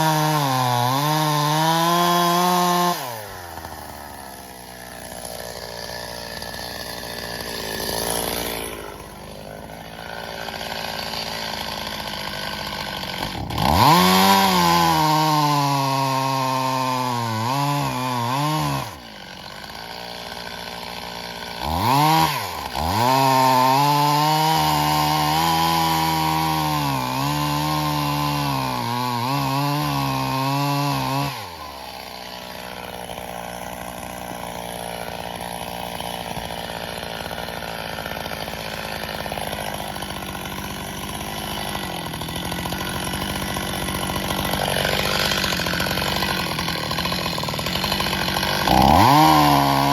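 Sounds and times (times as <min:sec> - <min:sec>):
chainsaw cutting logs: 0:00.0 - 0:49.9
chainsaw idling: 0:00.0 - 0:49.9.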